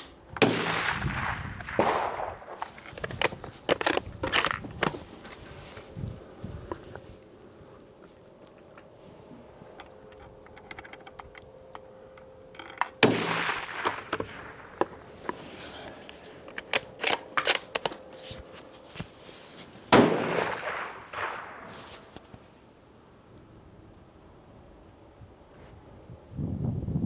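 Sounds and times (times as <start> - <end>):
rifle shots with rolling echo: 0.4 - 4.4, 13.0 - 16.0, 19.9 - 22.4
rifle bolt clicking: 9.8 - 18.5.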